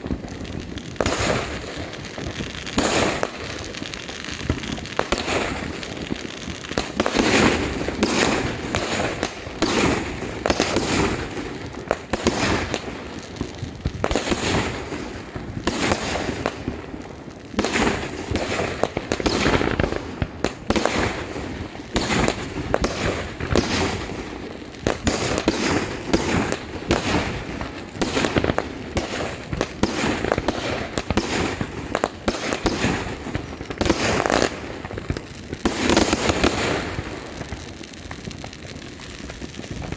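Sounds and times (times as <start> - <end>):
fireworks banging and crackling: 0.0 - 39.9.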